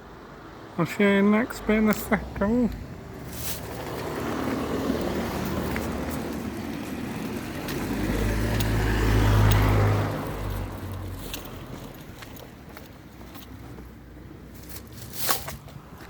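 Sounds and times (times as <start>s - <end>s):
car driving past: 3.0s - 12.0s.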